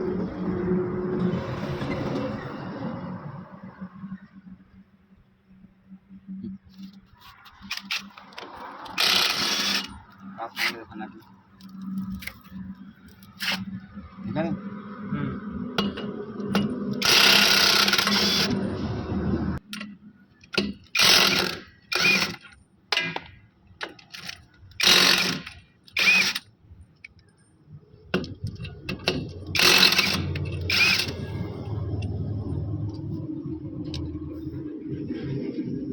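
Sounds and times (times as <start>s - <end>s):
tool spinning down whine: 8.8s - 10.0s, 16.6s - 19.6s, 29.6s - 35.8s
impact wrench hammering: 15.8s - 18.6s, 28.2s - 31.2s.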